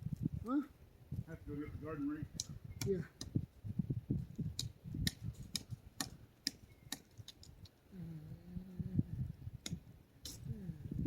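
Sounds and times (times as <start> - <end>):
dull low thuds: 2.2 - 6.2.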